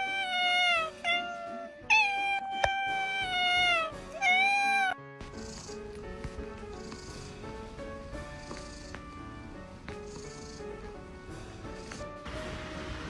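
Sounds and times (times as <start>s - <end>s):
cat meowing: 0.0s - 5.0s.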